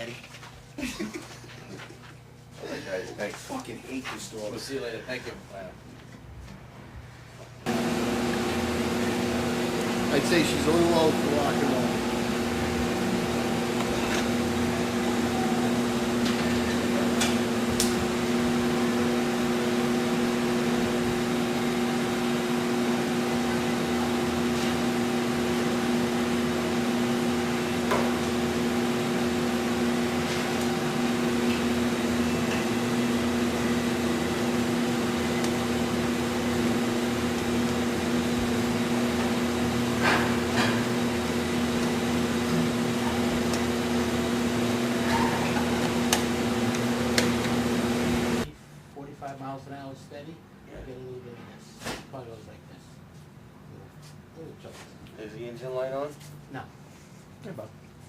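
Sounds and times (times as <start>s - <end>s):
machine hum with hiss: 7.6s - 48.5s.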